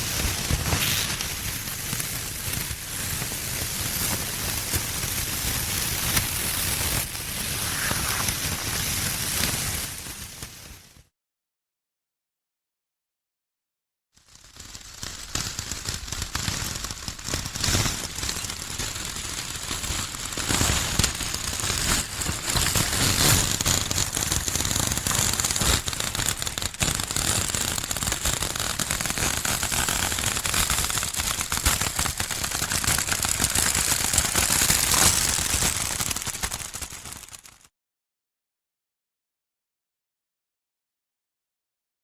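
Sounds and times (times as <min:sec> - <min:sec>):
crackling and popping: 0:07.2 - 0:09.4, 0:20.4 - 0:37.5.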